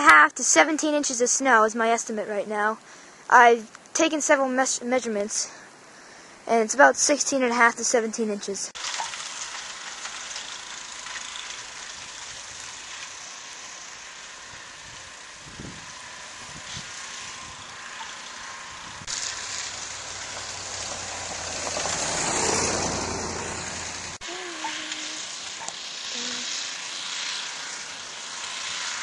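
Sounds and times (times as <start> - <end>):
wet snowstorm hiss: 8.8 - 29.0
wind on microphone: 14.5 - 17.7, 18.7 - 19.1.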